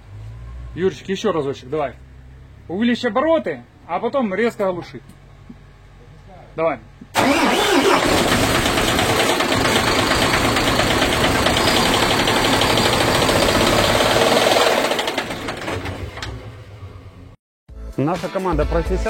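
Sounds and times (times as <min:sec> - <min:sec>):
diesel engine knocking: 0:08.0 - 0:16.4.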